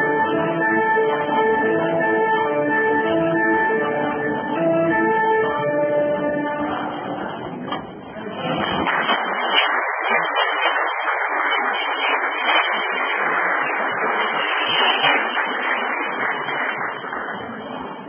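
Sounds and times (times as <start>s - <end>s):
audience applause: 8.4s - 18.0s.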